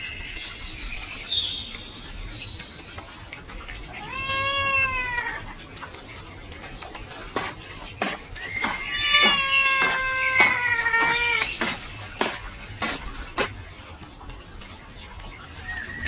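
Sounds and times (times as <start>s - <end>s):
cat meowing: 3.9s - 5.4s, 8.6s - 11.5s.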